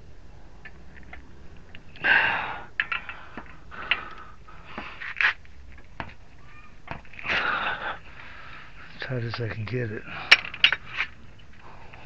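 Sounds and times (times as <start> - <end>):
person straining breath: 7.2 - 8.8.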